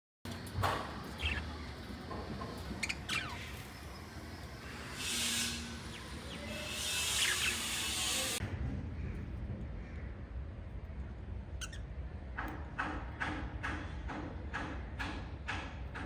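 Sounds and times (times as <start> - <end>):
lovebirds chirping: 1.0 - 2.0, 2.6 - 8.4.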